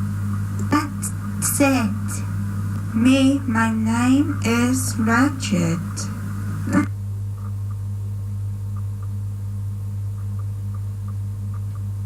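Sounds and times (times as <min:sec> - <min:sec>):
low electrical hum: 0:00.0 - 0:12.0
faint regular ticks: 0:08.7 - 0:09.2.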